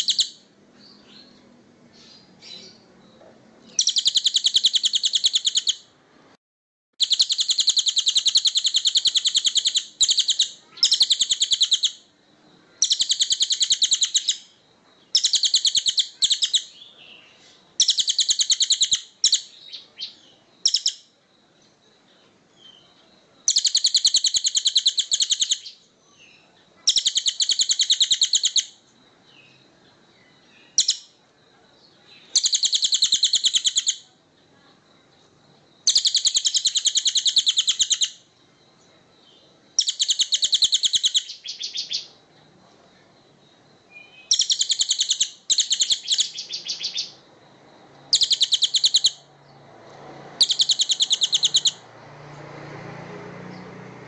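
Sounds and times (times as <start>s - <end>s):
faint thin steady whine: 0.0s - 3.8s, 5.8s - 6.4s, 9.9s - 17.8s, 18.7s - 23.5s, 28.2s - 50.4s
bird rattling trill: 7.0s - 12.0s, 17.8s - 19.4s, 32.4s - 33.9s, 35.9s - 38.2s, 48.1s - 49.2s, 50.4s - 51.8s.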